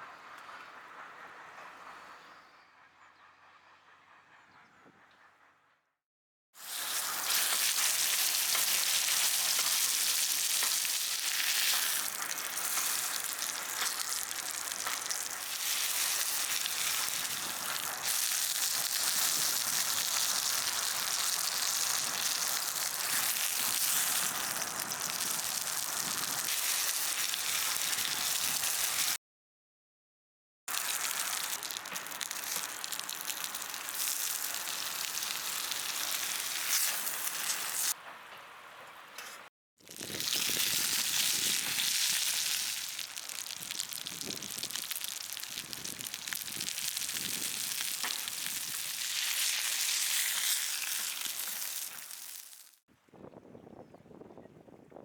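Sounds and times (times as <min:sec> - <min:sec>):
steak sizzling: 0:06.6 - 0:29.2, 0:30.7 - 0:38.0, 0:39.8 - 0:52.8.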